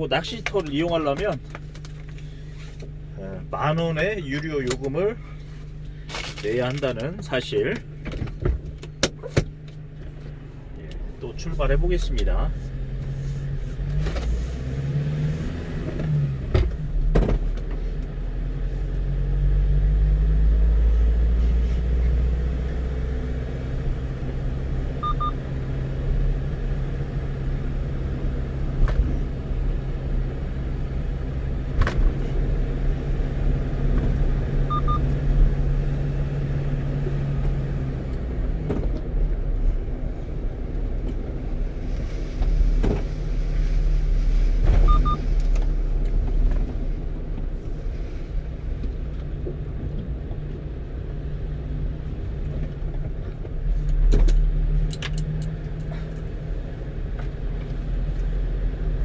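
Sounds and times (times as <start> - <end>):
truck engine and road noise: 0.0 - 59.0
faint short double beeps: 34.7 - 35.1, 44.8 - 45.2.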